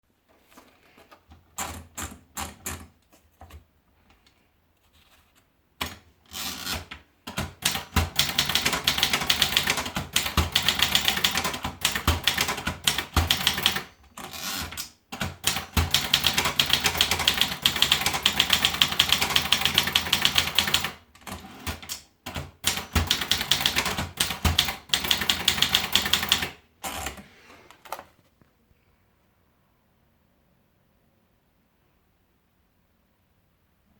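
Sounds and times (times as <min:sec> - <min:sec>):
typewriter typing: 0:01.5 - 0:03.6, 0:05.8 - 0:28.1.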